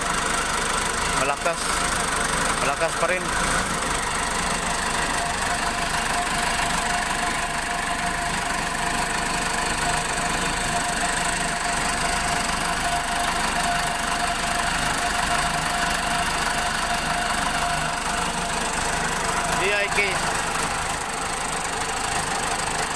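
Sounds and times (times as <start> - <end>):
backhoe engine idling: 0.0 - 22.9.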